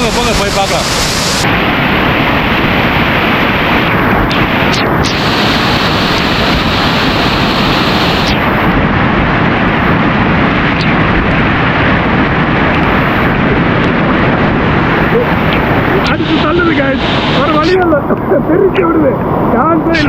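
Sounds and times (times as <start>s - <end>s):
waterfall rushing: 0.0s - 8.8s, 12.8s - 18.0s.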